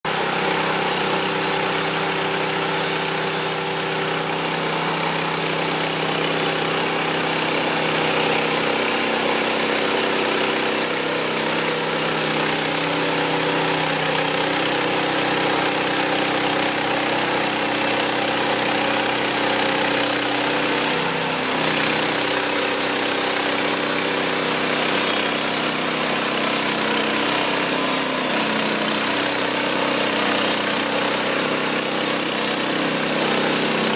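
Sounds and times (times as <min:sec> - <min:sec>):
sawmill engine running: 0:00.0 - 0:33.9
saw blade cutting log: 0:00.1 - 0:33.9.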